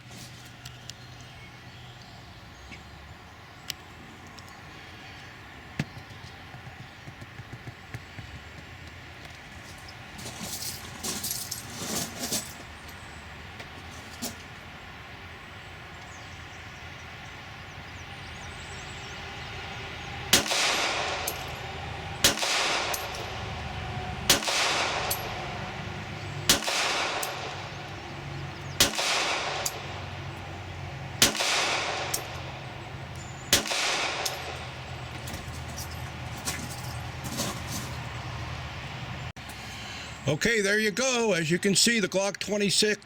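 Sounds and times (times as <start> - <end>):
pistol shots with ringing echo: 20.3 - 23.6, 24.2 - 25.6, 26.4 - 27.9, 28.7 - 30.2, 31.2 - 32.7, 33.3 - 35.7.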